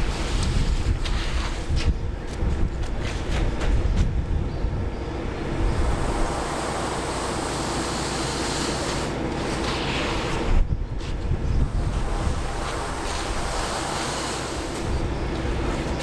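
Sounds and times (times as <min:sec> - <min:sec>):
diesel engine running: 0:04.9 - 0:10.5
rushing noise: 0:05.2 - 0:10.7, 0:11.6 - 0:16.0.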